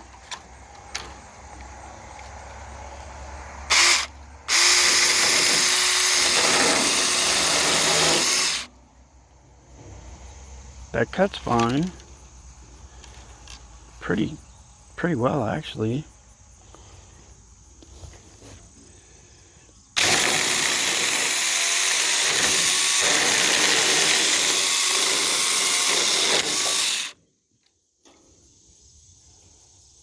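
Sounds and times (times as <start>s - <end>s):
electric chainsaw cutting wood: 3.7s - 8.7s, 20.0s - 27.2s.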